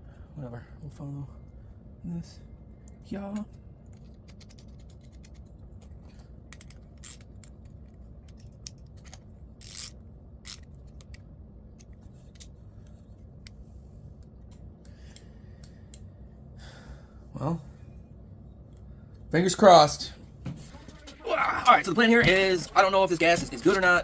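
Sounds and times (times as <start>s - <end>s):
steady low hum: 0.0s - 24.0s
small metal parts scraping: 3.9s - 11.0s.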